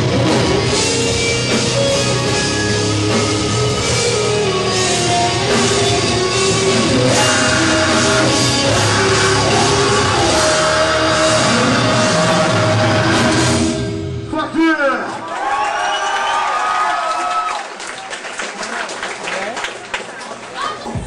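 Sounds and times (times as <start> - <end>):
death metal band playing live: 0.0 - 14.6
drum kit: 0.0 - 14.6
heavy guitars: 0.0 - 14.8.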